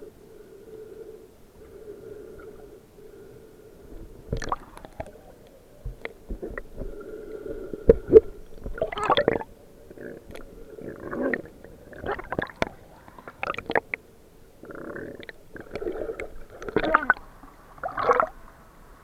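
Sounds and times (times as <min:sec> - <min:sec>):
muffled underwater hum: 0:00.0 - 0:18.7.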